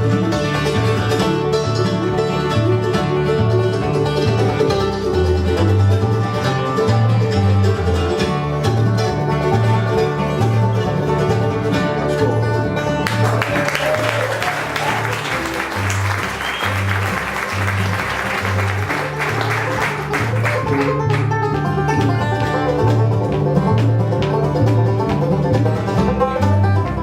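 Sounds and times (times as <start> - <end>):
bluegrass band playing: 0.0 - 27.0
audience applause: 13.0 - 21.4.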